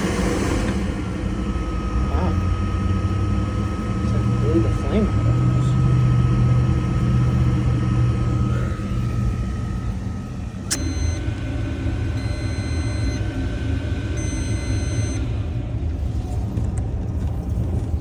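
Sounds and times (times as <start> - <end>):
water heater burner rumble: 0.0 - 18.0
electronic tones: 3.8 - 15.3.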